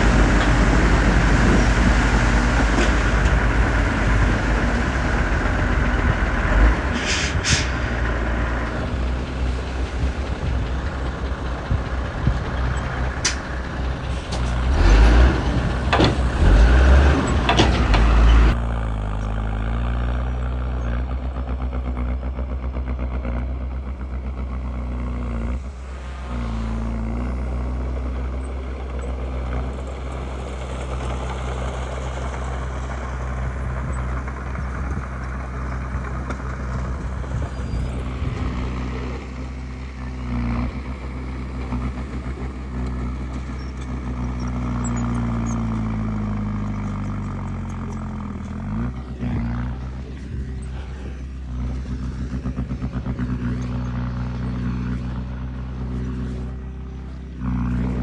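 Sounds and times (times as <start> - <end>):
bulldozer diesel engine running: 0.0 - 58.0.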